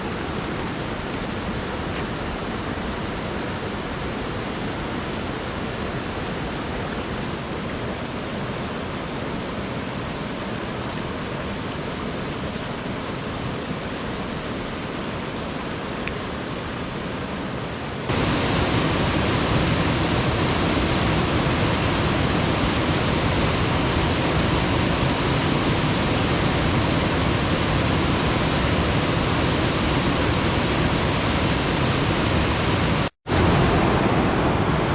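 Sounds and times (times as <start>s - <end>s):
waterfall rushing: 18.1s - 34.9s.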